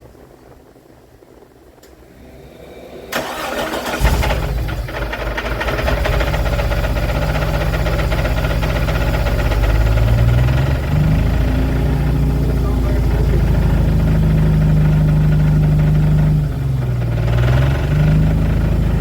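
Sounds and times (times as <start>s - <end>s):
engine cranking and idling rough: 1.8s - 19.0s
rapid engine knock: 4.0s - 19.0s.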